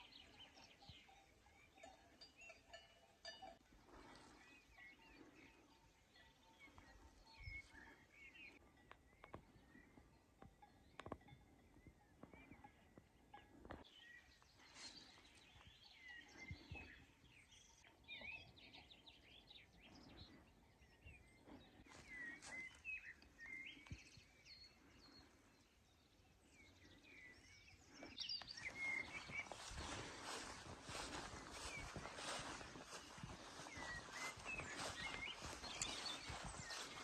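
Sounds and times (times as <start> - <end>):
small birds chirping: 0.0 - 37.0
rustling or shuffling noise: 28.7 - 37.0.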